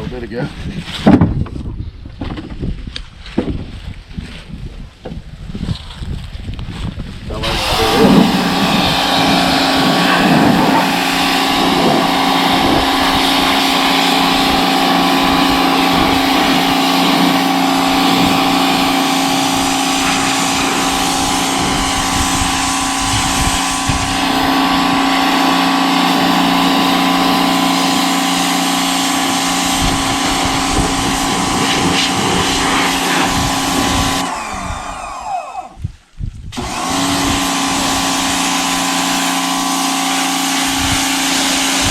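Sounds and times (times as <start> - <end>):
water spray hissing: 7.4 - 34.3
pressure washer motor humming: 7.4 - 35.8, 36.6 - 41.9.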